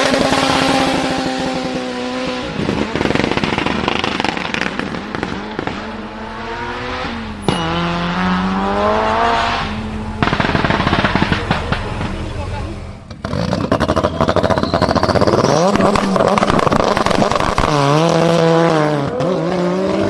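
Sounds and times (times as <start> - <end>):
engine revving: 0.0 - 20.0
exhaust pops and crackles: 2.5 - 5.9, 10.1 - 18.4
sharp exhaust bang: 9.1 - 12.5.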